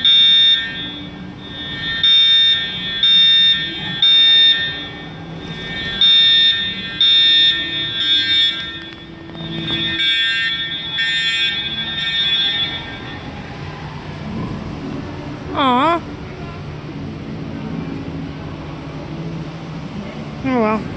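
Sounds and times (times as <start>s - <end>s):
fire alarm horn blasts: 0.0s - 13.7s.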